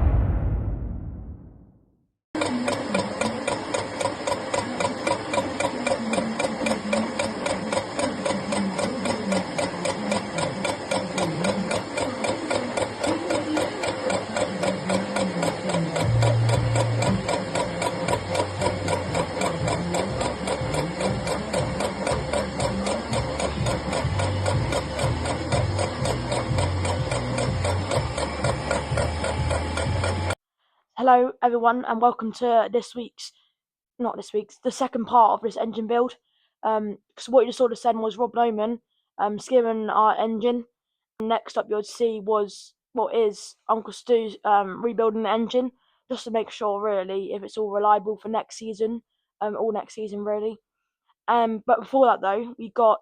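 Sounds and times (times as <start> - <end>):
deeper hum: 0.0 - 1.7
machine cutting metal with whine: 2.4 - 30.4.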